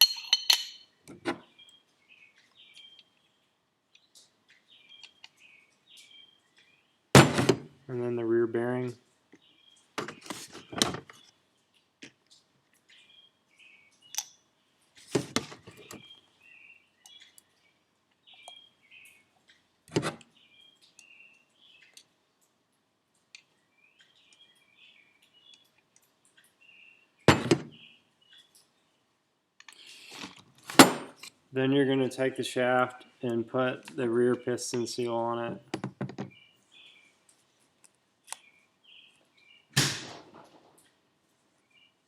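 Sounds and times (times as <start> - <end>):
metal parts and tools knocking: 0.0 - 0.8
faint high chirping: 18.3 - 19.2.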